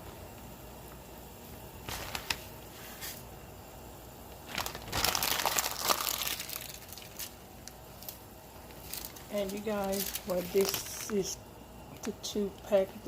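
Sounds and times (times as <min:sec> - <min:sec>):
plastic packaging crinkling: 0:01.8 - 0:02.5, 0:04.4 - 0:11.4.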